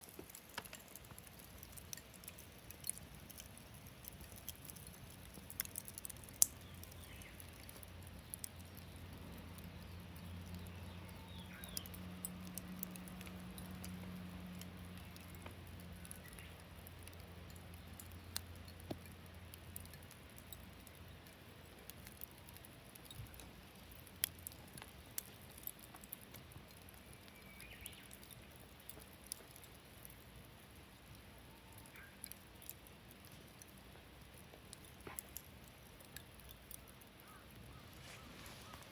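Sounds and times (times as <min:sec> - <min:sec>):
campfire wood crackling: 0:00.0 - 0:38.9
faint bird calls: 0:37.2 - 0:38.9.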